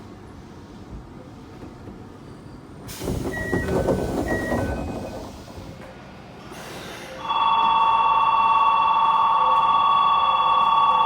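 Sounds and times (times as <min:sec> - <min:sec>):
platform bell ringing: 0:07.2 - 0:11.0.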